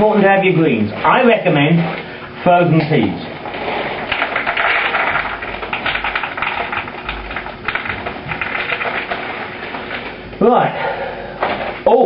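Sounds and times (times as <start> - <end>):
frozen peas pouring: 3.4 - 10.1.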